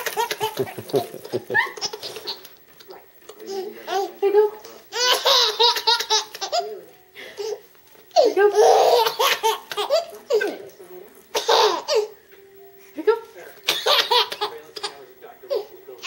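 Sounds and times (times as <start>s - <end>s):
young child laughing: 0.0s - 2.4s.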